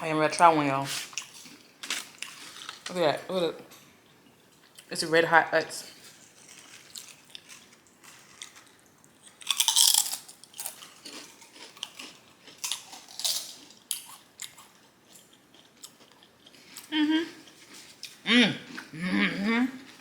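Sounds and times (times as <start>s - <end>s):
chewing crunches: 6.1s - 18.9s
crunchy bite into potato chip: 9.4s - 14.1s.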